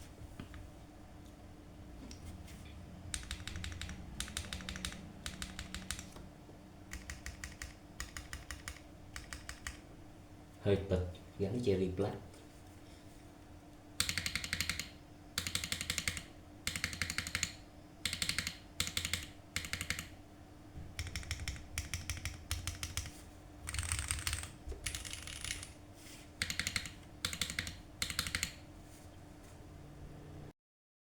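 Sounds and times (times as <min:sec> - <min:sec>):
mechanical keyboard typing: 0:03.1 - 0:06.2, 0:06.9 - 0:09.8, 0:14.0 - 0:20.1, 0:21.0 - 0:25.8, 0:26.4 - 0:28.6.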